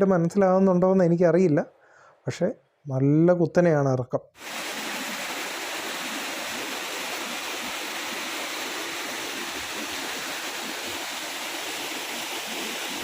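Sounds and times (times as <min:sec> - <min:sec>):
waterfall rushing: 0:04.4 - 0:13.0.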